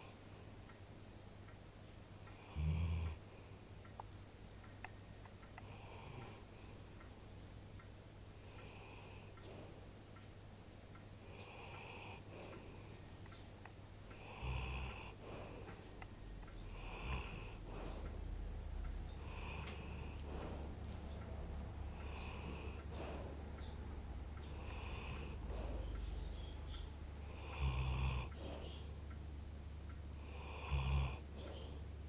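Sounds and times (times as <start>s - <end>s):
dog snoring faintly: 2.4s - 3.5s, 11.2s - 12.8s, 14.2s - 15.9s, 16.7s - 18.4s, 19.2s - 21.1s, 21.8s - 23.5s, 24.5s - 26.5s, 27.2s - 28.9s, 30.2s - 31.8s.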